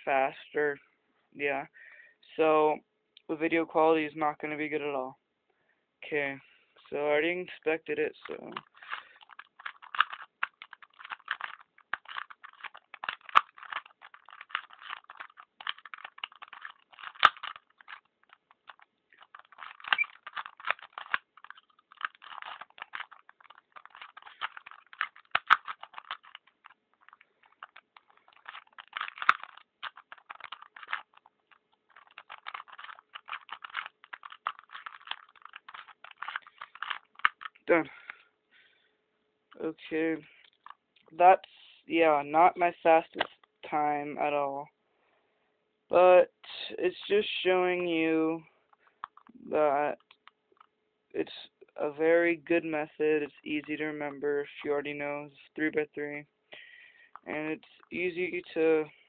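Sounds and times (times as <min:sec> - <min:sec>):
plastic puzzle cube clicking: 0:08.4 - 0:38.2, 0:48.8 - 0:49.4, 0:50.0 - 0:50.7.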